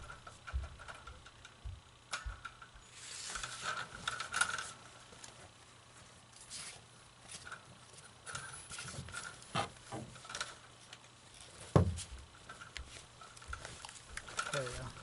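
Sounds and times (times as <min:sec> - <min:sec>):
knocks and clicks of handled parts: 0:00.0 - 0:02.8, 0:08.2 - 0:15.0.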